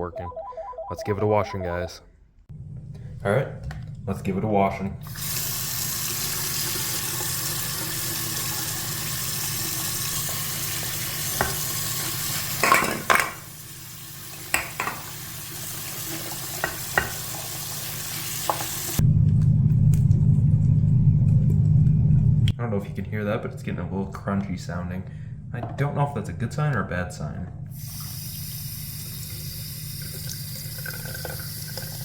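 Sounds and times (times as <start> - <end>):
water running from a tap: 5.0 - 19.0, 27.7 - 32.0.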